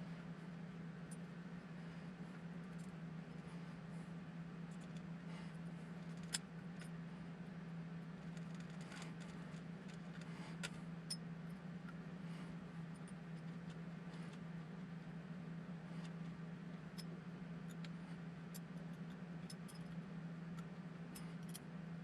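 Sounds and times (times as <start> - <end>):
steady low hum: 0.0 - 22.0
small metal parts clicking: 8.2 - 11.2, 16.9 - 20.0, 20.6 - 21.6.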